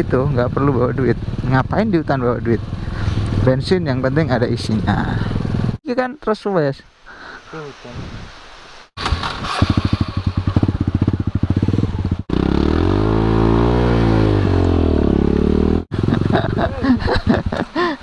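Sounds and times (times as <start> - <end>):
motorcycle engine running: 0.0 - 5.8, 9.0 - 16.8.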